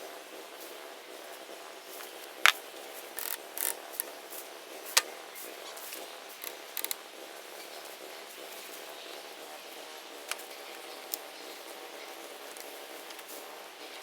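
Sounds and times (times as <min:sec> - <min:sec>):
small clicks: 0:03.2 - 0:04.1, 0:06.4 - 0:07.0.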